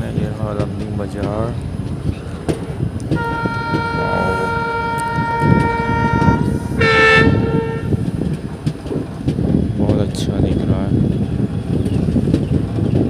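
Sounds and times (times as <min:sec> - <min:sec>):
low rumble: 0:00.0 - 0:09.8
train horn blasts: 0:03.1 - 0:08.2.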